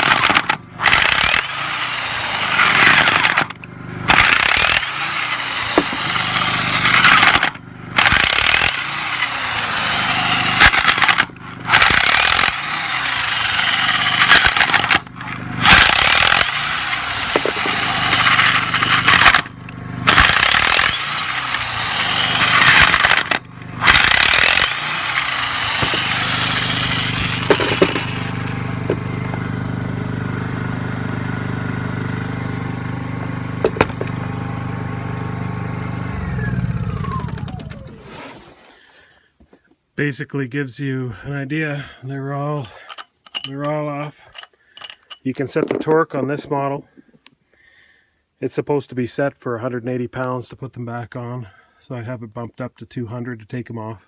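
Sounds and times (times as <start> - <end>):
impact wrench hammering: 0.0 - 29.4, 33.6 - 34.2
generator humming: 0.0 - 38.5.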